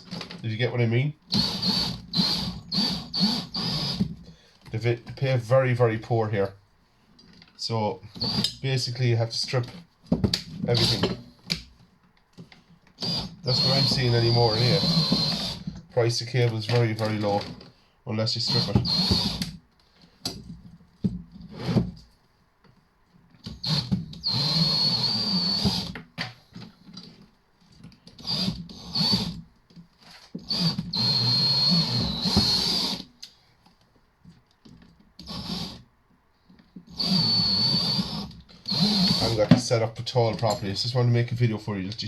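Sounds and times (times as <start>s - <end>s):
cordless drill whining: 1.3s - 4.3s, 8.1s - 8.6s, 10.7s - 11.2s, 13.0s - 15.8s, 18.4s - 19.6s, 23.5s - 26.0s, 28.2s - 29.4s, 30.4s - 33.1s, 35.2s - 35.8s, 36.9s - 39.6s.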